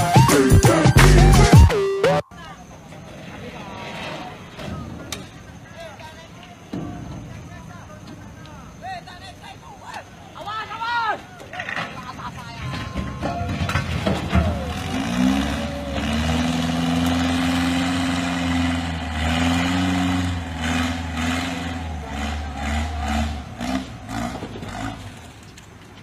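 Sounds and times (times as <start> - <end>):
heavy machine engine running: 12.7 - 26.0.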